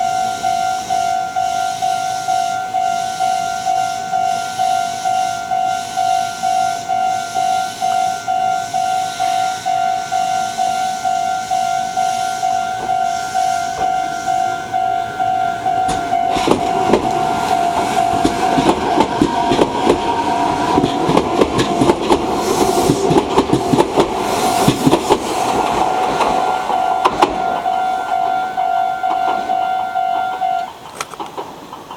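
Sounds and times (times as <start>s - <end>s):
level crossing bell ringing: 0.0s - 18.7s, 25.9s - 30.7s
train whine: 0.0s - 31.9s
train wheels clattering: 2.8s - 31.9s.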